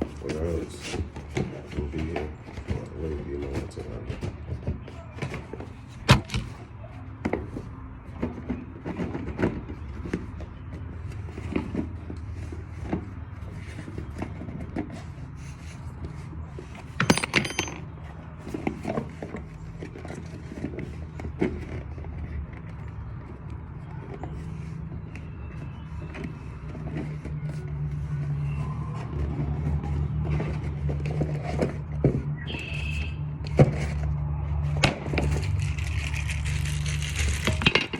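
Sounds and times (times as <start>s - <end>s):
hand tools clicking and scraping: 7.3s - 22.8s, 33.5s - 37.9s.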